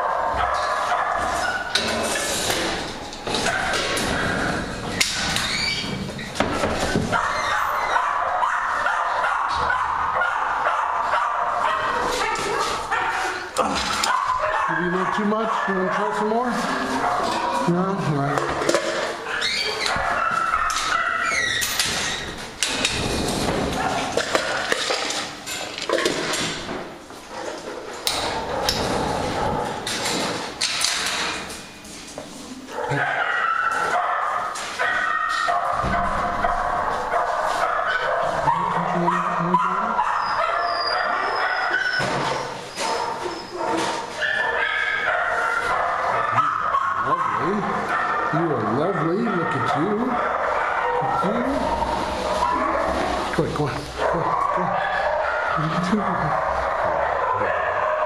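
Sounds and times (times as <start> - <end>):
dogs barking and yipping: 0.0 - 58.0
knocks and clatter: 21.6 - 26.9.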